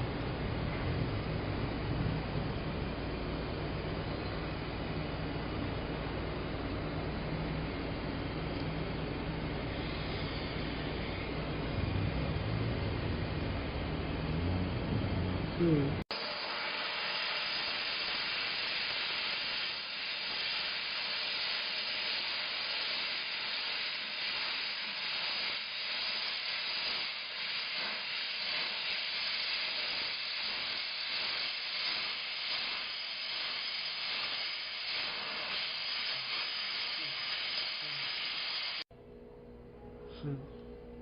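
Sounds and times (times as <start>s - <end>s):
steam mop hissing: 9.2s - 14.7s, 16.1s - 38.9s.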